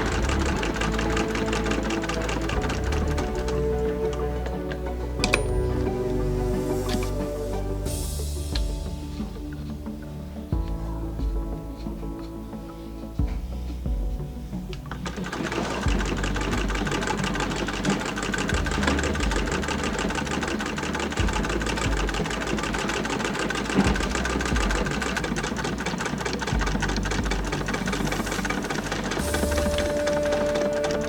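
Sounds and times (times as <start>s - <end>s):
hand-crank sewing machine clattering: 0.0s - 5.8s, 14.9s - 31.0s.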